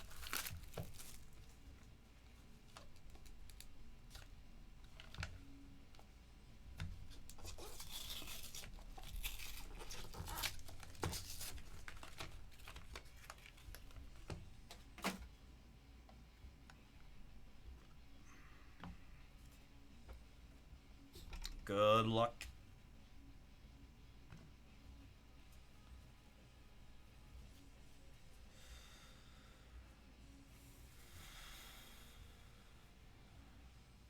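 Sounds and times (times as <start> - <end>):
plastic packaging crinkling: 0.0 - 1.6, 7.3 - 14.2.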